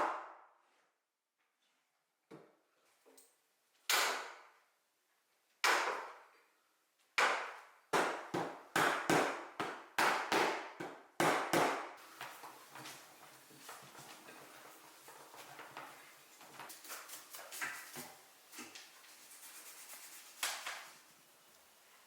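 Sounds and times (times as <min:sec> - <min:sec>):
hammer strikes on wood: 0:07.2 - 0:12.0.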